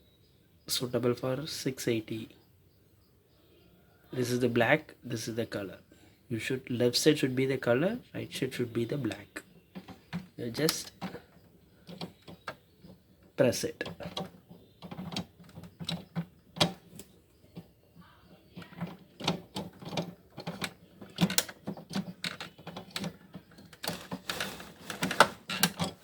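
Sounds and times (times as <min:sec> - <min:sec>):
plastic clattering: 0:08.6 - 0:26.0
plastic clicks and knocks: 0:08.9 - 0:26.0.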